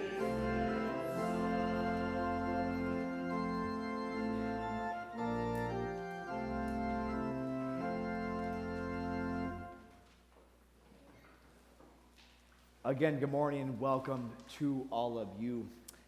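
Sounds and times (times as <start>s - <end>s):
organ playing sustained chords: 0.0s - 10.0s.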